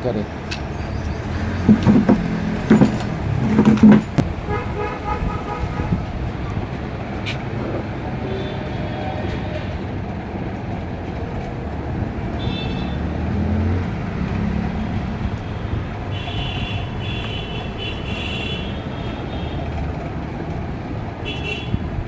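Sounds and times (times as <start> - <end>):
road traffic rumble: 0.0 - 22.0.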